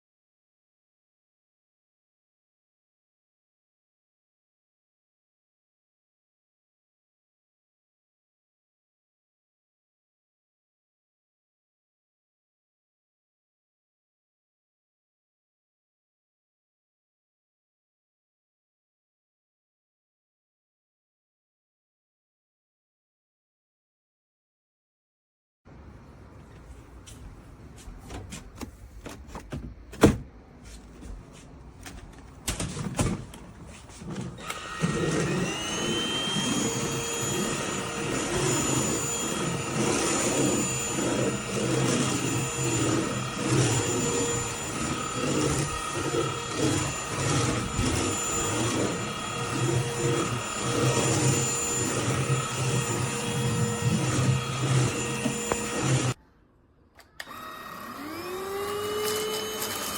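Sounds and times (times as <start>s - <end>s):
stick vacuum motor whining: 32.5s - 56.2s, 57.0s - 59.9s.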